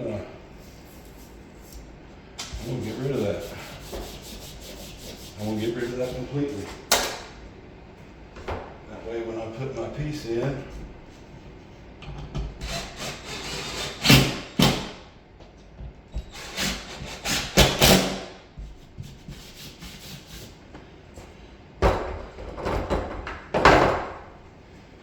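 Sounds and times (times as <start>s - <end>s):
scraping strokes on drywall: 0.6s - 6.7s, 18.6s - 20.6s.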